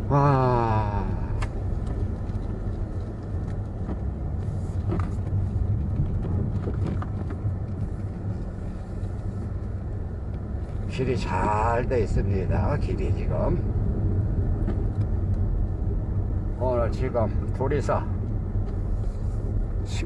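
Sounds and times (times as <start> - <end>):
car engine and tyre rumble: 0.0 - 20.0
small knocks and clicks: 1.4 - 8.2, 14.6 - 15.8.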